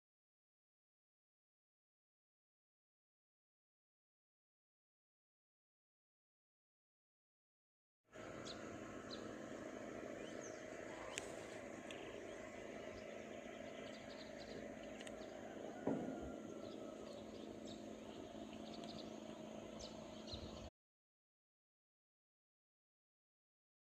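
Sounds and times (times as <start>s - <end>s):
steady low hum: 8.1s - 20.7s
bird chirps: 8.4s - 9.4s, 10.1s - 20.7s
thump: 15.8s - 16.3s.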